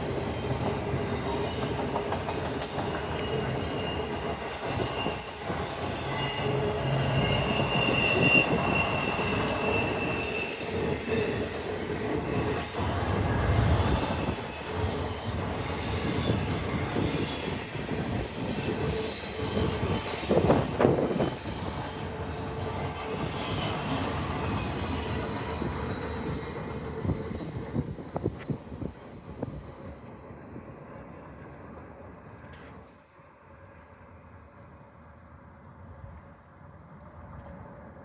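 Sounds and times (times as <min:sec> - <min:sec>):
freight train rumbling: 0:00.0 - 0:38.0
wheel flanges squealing: 0:02.9 - 0:15.2.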